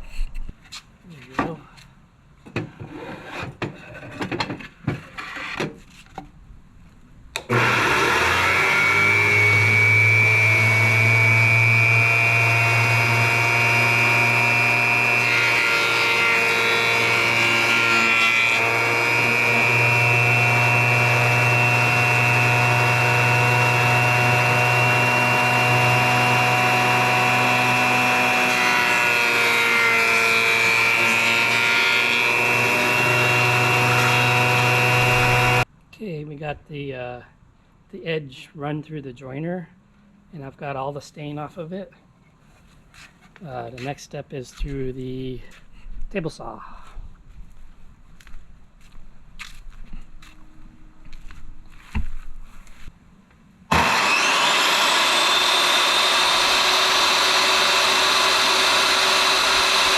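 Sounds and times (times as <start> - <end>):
jointer humming: 7.4 - 35.6, 53.7 - 59.9
board planed on jointer: 7.4 - 35.7, 53.7 - 59.9.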